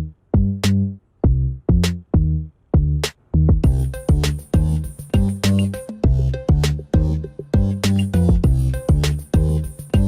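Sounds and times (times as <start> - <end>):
deep bass line: 0.0 - 10.0
electronic music: 3.5 - 10.0.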